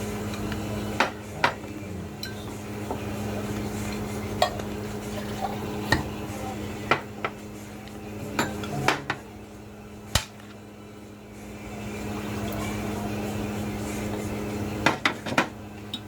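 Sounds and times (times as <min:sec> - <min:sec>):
steady low hum: 0:00.0 - 0:16.0
utensils clinking on a plate: 0:00.2 - 0:06.2, 0:06.8 - 0:09.3.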